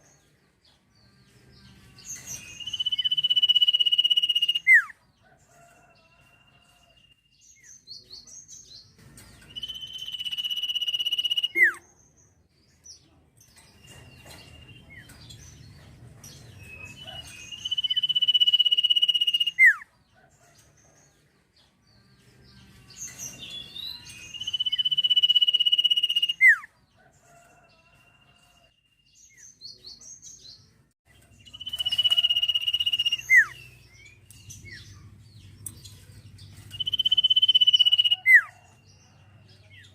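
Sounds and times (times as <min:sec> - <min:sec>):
songbird singing: 0:00.0 - 0:39.9.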